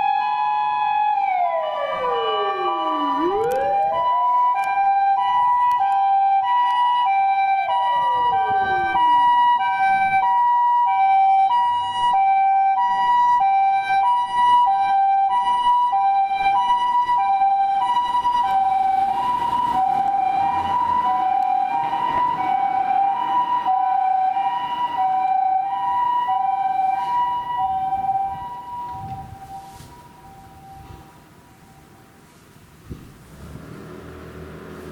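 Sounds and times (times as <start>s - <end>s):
two-tone electronic siren: 0.0s - 32.2s.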